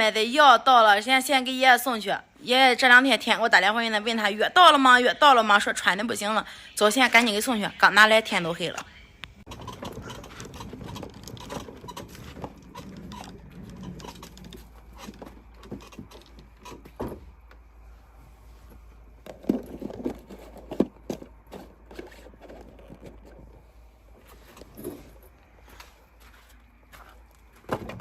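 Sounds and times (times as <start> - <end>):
footsteps walking: 24.1 - 28.0.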